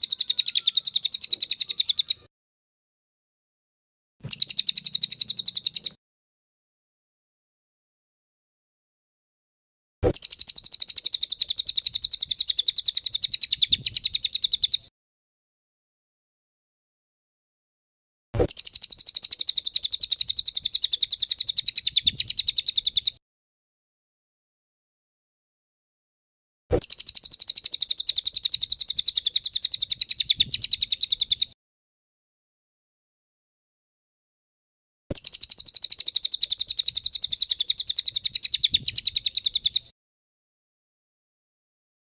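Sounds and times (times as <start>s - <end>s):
songbird trilling: 0.0s - 2.3s, 4.3s - 6.0s, 10.1s - 14.8s, 18.5s - 23.1s, 26.8s - 31.4s, 35.1s - 39.8s.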